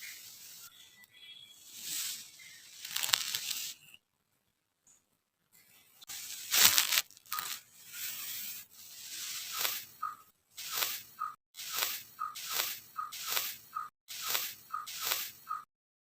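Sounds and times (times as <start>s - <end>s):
kinetic sand crunching: 1.8s - 3.8s, 6.1s - 8.5s, 9.1s - 9.9s, 10.6s - 15.4s.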